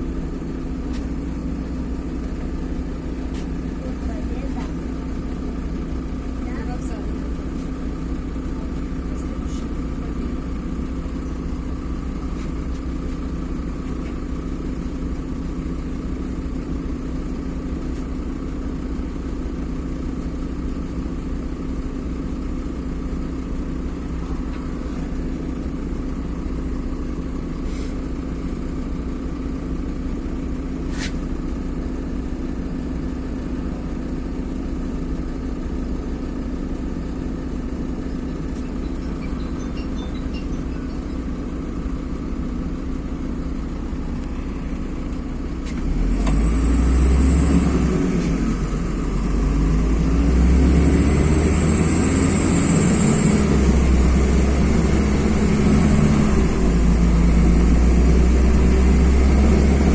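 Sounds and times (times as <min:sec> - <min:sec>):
bus engine low hum: 0:00.0 - 0:59.9.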